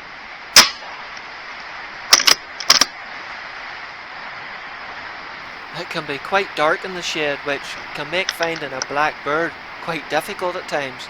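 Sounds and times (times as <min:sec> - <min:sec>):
air rifle shot: 0:00.6 - 0:00.9.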